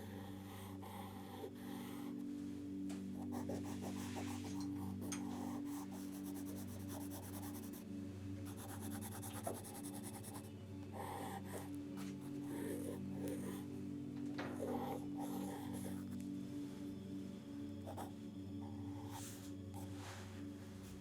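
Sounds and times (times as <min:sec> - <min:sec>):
pencil scratching on paper: 0:03.2 - 0:07.8, 0:08.5 - 0:13.6, 0:14.6 - 0:16.2, 0:17.9 - 0:19.9.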